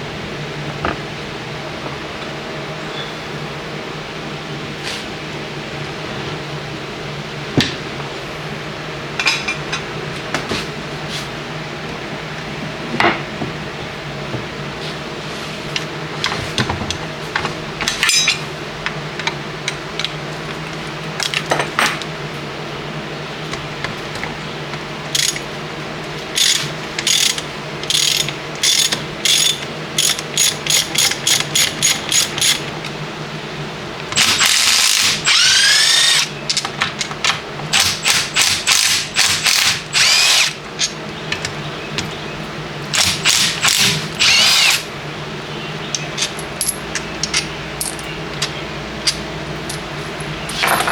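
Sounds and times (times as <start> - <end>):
steady low hum: 0.0 - 50.9
ratchet wrench clicking: 25.2 - 25.4, 26.4 - 32.6
power tool spinning: 34.2 - 36.4, 37.7 - 41.0, 42.9 - 44.9.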